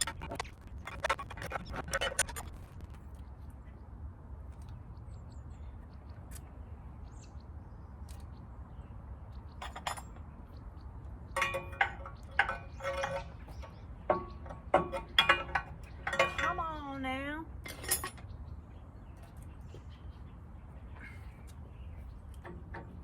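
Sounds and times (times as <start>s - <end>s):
steady low hum: 0.0s - 23.0s
metal parts clinking: 9.6s - 10.2s, 11.4s - 16.9s, 17.6s - 18.3s.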